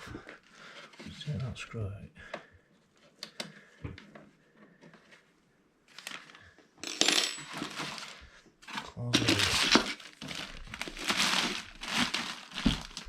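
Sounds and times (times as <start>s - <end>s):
scraping rustle: 7.5s - 13.0s.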